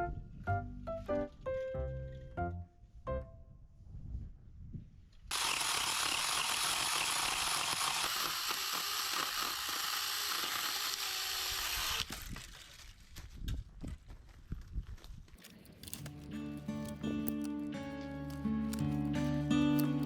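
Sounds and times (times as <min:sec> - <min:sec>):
loud rattling mechanical noise: 0:05.3 - 0:12.6.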